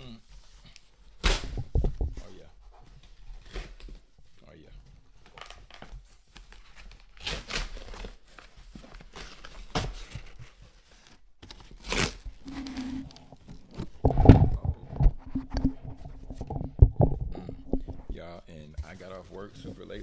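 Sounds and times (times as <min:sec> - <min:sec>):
heavy handling thumps: 0:01.4 - 0:02.4, 0:12.4 - 0:20.0
packaging tearing and crinkling: 0:05.2 - 0:14.6.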